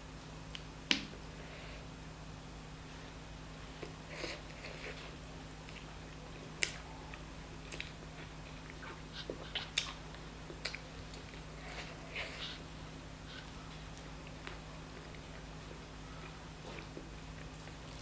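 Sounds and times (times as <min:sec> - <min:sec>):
low steady hum: 0:00.0 - 0:18.0
person chewing food: 0:03.8 - 0:18.0
mouth clicks and smacks: 0:06.6 - 0:08.0, 0:08.6 - 0:11.4.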